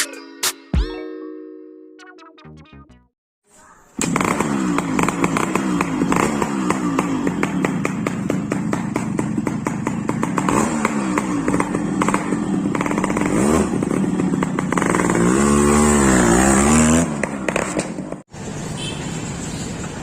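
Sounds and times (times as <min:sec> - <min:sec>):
two-stroke engine revving: 0:04.0 - 0:19.2.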